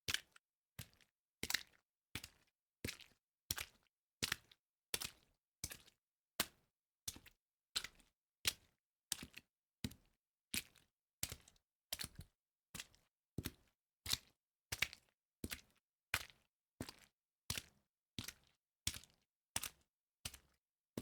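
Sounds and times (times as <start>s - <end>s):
footsteps walking through water: 16.2s - 17.7s.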